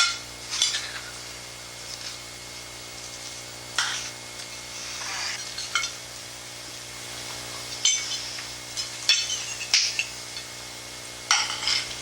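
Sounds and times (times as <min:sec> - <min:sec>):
cutlery clinking on plates: 0:00.0 - 0:01.1, 0:07.8 - 0:10.2, 0:11.3 - 0:12.0
steady low hum: 0:00.0 - 0:12.0.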